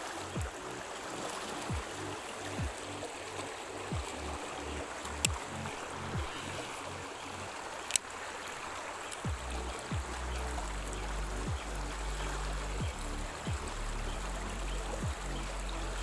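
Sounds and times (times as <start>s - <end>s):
music with deep bass beat: 0.0s - 7.1s, 9.2s - 16.0s
river water rushing: 0.0s - 16.0s
sharp clicks: 7.8s - 8.1s.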